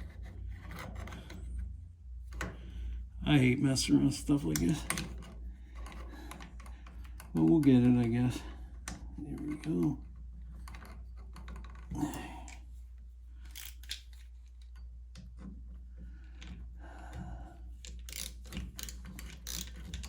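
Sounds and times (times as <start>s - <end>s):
small metal parts clicking: 13.4s - 14.9s, 17.8s - 20.0s
screwdriver clicks and scrapes: 13.4s - 15.5s, 17.8s - 20.0s.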